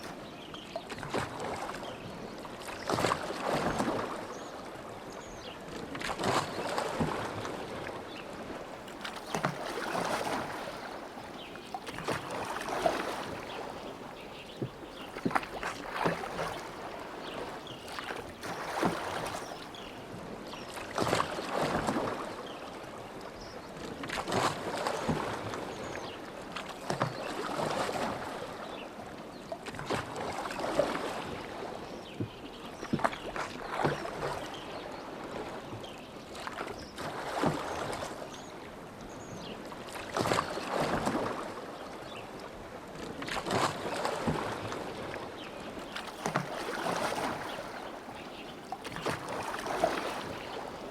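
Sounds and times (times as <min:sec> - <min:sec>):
oars splashing in water: 0:00.0 - 0:22.4, 0:24.0 - 0:25.7, 0:26.5 - 0:28.4, 0:29.6 - 0:38.2, 0:39.2 - 0:50.9
oar knocks: 0:11.8 - 0:16.7.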